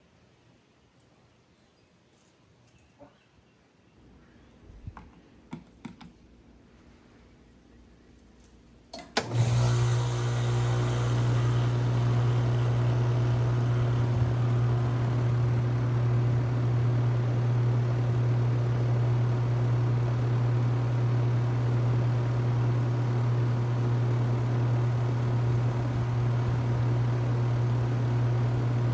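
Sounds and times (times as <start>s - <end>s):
heat pump humming: 9.0s - 28.9s.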